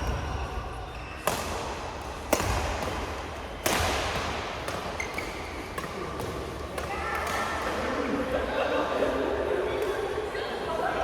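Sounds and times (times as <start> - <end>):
badminton racket hitting shuttlecock: 1.2 - 8.0.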